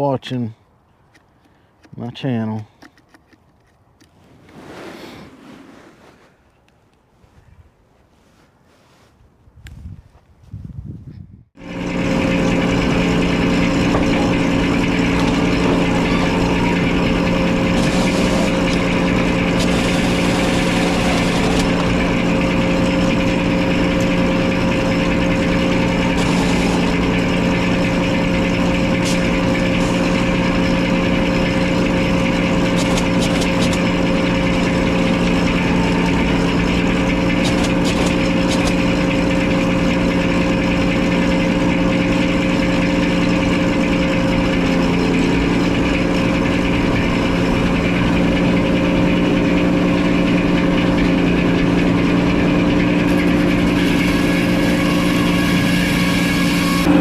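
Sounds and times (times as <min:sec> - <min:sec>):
sawmill engine running: 0:11.6 - 0:57.0.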